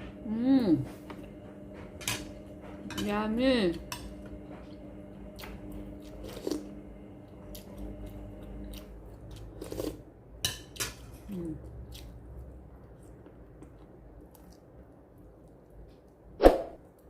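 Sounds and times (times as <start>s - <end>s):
person chewing food: 4.3s - 10.1s, 10.8s - 17.0s.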